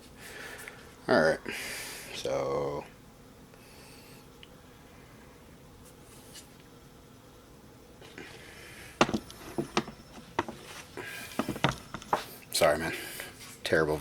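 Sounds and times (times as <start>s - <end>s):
light rubbing: 5.8s - 6.6s
hard parts clicking and knocking: 9.0s - 10.6s, 11.4s - 12.2s.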